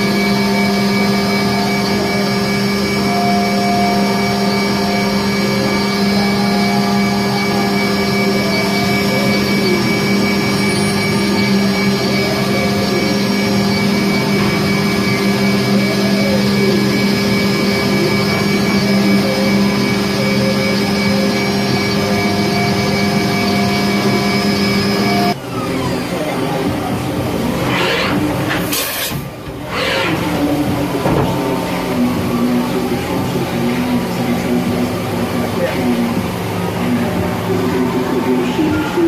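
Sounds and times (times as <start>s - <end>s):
mill spindle humming: 0.0s - 39.0s.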